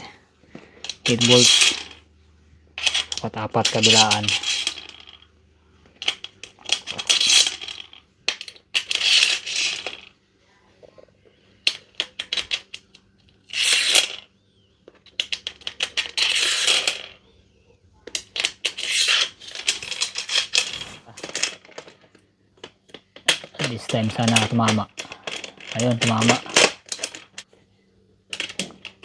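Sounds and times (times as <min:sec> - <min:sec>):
bolts scraping along metal track: 0:00.8 - 0:02.0, 0:02.8 - 0:05.0, 0:23.3 - 0:27.4.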